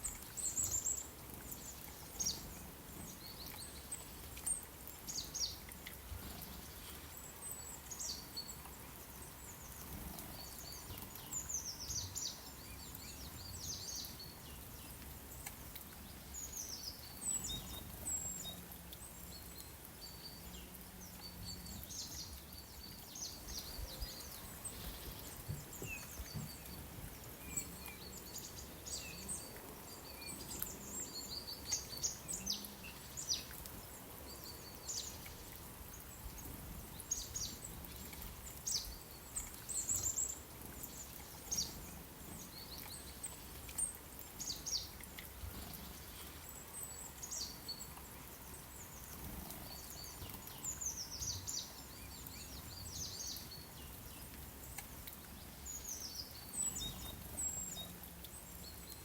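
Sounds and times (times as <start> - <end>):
small songbirds chirping: 0.0 - 59.0.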